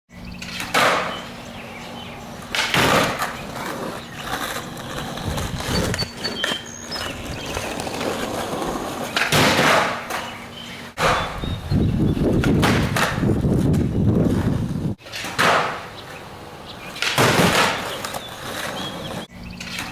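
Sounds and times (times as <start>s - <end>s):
skateboard impacts: 0.4s - 1.3s, 2.3s - 11.4s, 12.3s - 16.2s, 16.9s - 19.9s
skateboard rolling and clattering: 2.4s - 10.4s, 12.4s - 16.2s, 16.9s - 19.9s.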